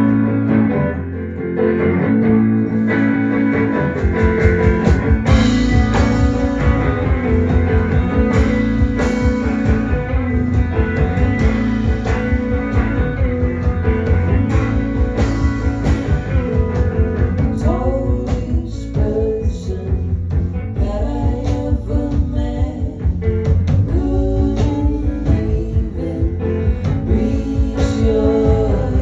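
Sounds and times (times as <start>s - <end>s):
live rock band playing: 0.0s - 29.0s
person singing: 15.2s - 29.0s.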